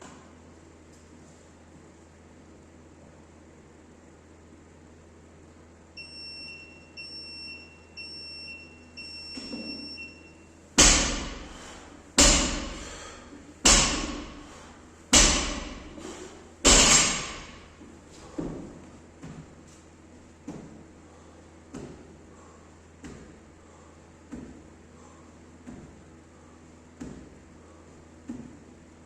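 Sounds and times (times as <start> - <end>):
workout timer beeps: 6.0 - 10.6
barbell hitting the floor: 10.8 - 11.4, 12.2 - 12.8, 13.6 - 14.4, 15.1 - 16.0, 16.6 - 17.7.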